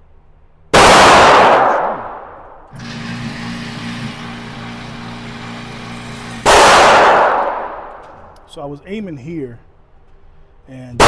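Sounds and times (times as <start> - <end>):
pistol shots: 0.8 - 2.3, 6.4 - 8.0
low mechanical hum: 2.3 - 11.0.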